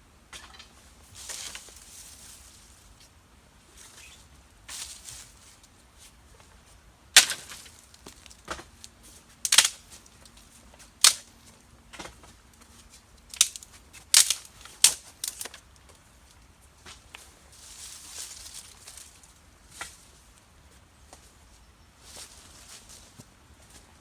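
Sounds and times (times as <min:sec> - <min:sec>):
dry sticks snapping: 0:07.2 - 0:12.2, 0:13.2 - 0:16.4.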